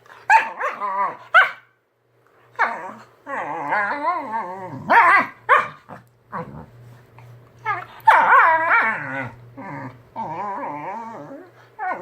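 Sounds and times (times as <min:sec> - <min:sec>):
dog whining growl: 0:00.5 - 0:01.3, 0:02.6 - 0:05.3, 0:07.6 - 0:12.0.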